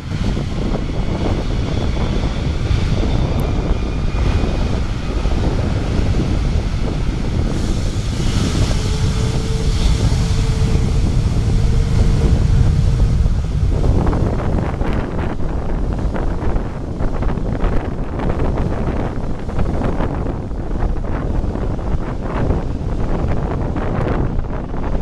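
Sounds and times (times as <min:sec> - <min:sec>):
distant jet engines humming: 0:00.0 - 0:17.7
wind buffeting microphone: 0:00.0 - 0:25.0.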